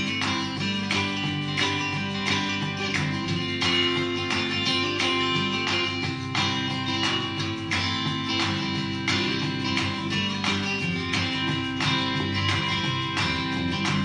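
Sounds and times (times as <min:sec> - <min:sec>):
guitar music from radio speakers: 0:00.0 - 0:14.0.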